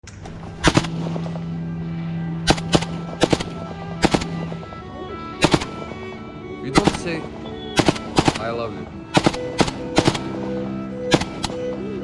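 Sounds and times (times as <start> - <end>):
music with low held note: 0.1 - 12.0
gunfire bursts: 0.5 - 1.5, 2.4 - 4.7, 5.4 - 6.0, 6.8 - 11.8.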